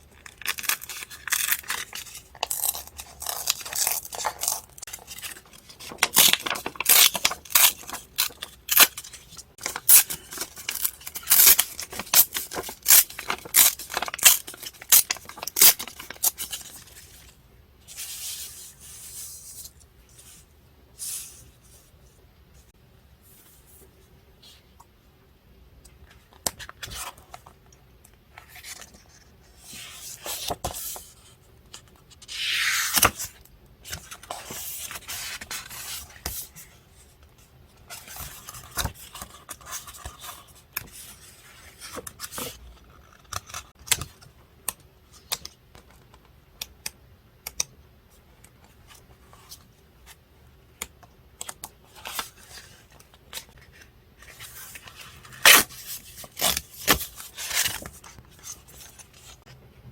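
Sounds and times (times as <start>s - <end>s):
paper rustling and scraping: 51.9s - 59.5s.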